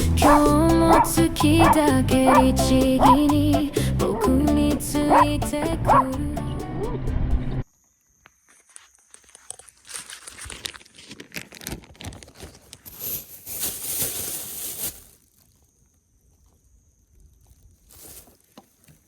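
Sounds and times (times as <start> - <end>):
crunching and rustling: 8.3 - 19.0.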